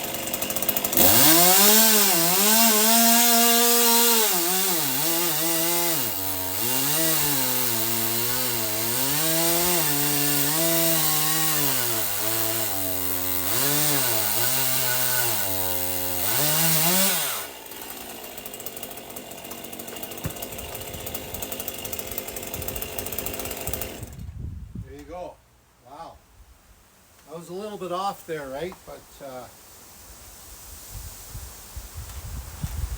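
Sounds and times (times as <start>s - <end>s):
chainsaw idling: 0.0s - 24.2s
chainsaw cutting wood: 0.0s - 24.4s.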